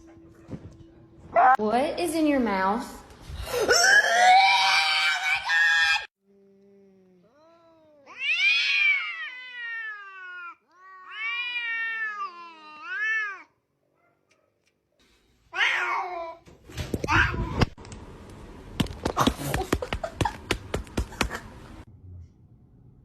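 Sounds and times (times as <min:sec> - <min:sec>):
cat meowing: 0:07.3 - 0:13.5.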